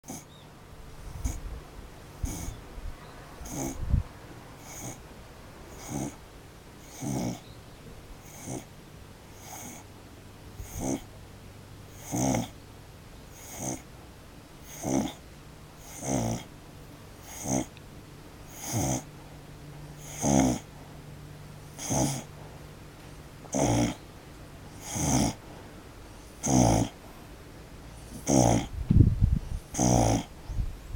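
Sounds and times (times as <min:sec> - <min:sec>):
pet snoring: 0:00.0 - 0:00.4, 0:01.0 - 0:01.4, 0:02.1 - 0:02.6, 0:03.4 - 0:04.0, 0:04.6 - 0:05.0, 0:05.7 - 0:06.2, 0:06.8 - 0:07.5, 0:08.2 - 0:08.7, 0:09.3 - 0:09.9, 0:10.6 - 0:11.2, 0:11.9 - 0:12.6, 0:13.3 - 0:13.9, 0:14.6 - 0:15.2, 0:15.8 - 0:16.5, 0:17.2 - 0:17.8, 0:18.5 - 0:19.1, 0:20.0 - 0:20.9, 0:21.6 - 0:22.4, 0:23.4 - 0:24.1, 0:24.7 - 0:25.5, 0:26.2 - 0:27.2, 0:27.9 - 0:28.8, 0:29.4 - 0:30.6.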